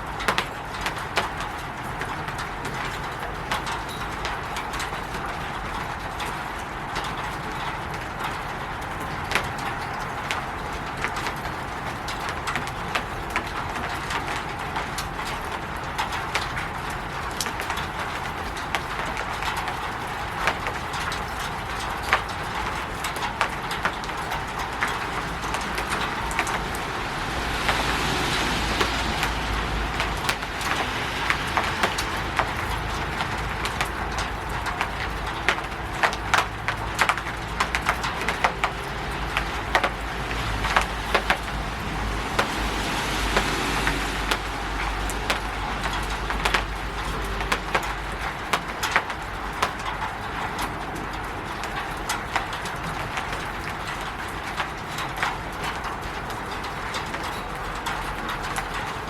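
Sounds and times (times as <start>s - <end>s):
rain on a roof: 0.0s - 59.0s
rushing swell of rain: 0.0s - 59.0s.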